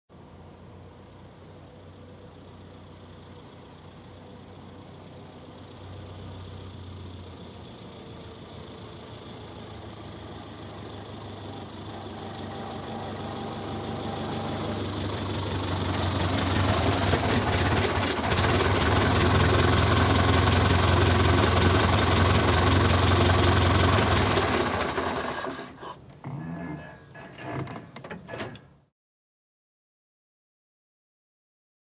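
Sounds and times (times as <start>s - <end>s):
car engine running: 1.9s - 25.9s.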